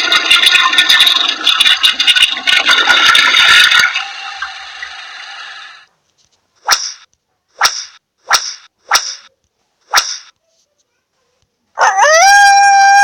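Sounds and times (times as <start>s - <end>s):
toilet flush effect: 0.0s - 5.9s
whip-crack effects: 6.6s - 9.3s, 9.9s - 10.4s.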